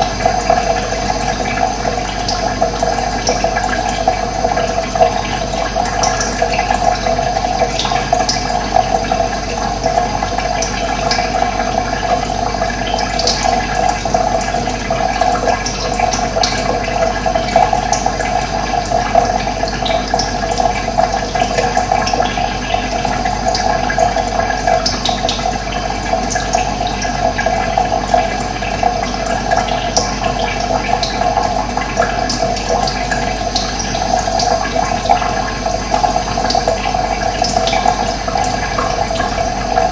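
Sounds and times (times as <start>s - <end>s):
running water rushing: 17.8s - 39.9s.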